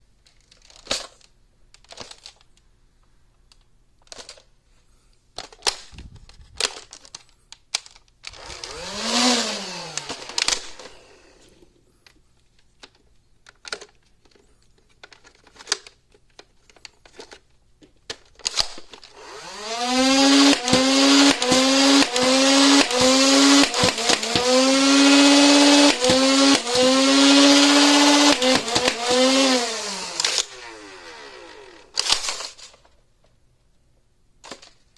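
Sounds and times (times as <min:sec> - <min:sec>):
flywheel motors whining: 0:08.3 - 0:11.6, 0:19.1 - 0:32.4.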